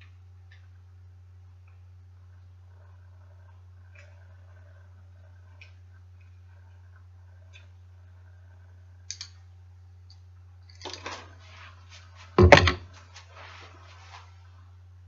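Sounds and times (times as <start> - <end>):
steady low hum: 0.0 - 15.0
loud clunk: 12.4 - 12.9.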